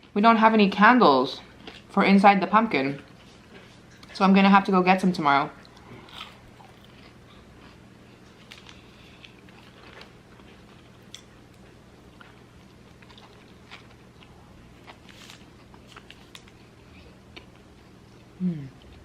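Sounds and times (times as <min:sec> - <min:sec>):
person chewing food: 0:01.6 - 0:01.9, 0:05.6 - 0:19.0.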